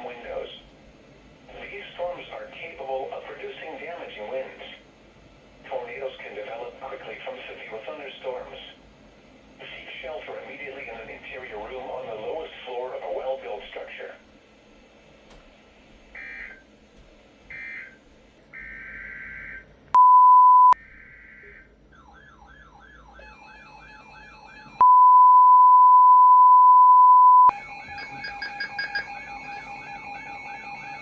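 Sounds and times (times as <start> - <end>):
steady warning alarm tone: 14.3 - 20.0, 20.7 - 25.0, 27.5 - 31.0
warbling siren-like alarm: 16.1 - 16.6, 17.5 - 19.7, 20.8 - 24.9, 27.5 - 31.0
steady beeping tones: 21.9 - 25.1, 27.5 - 31.0
digital header tone bursts: 27.5 - 31.0.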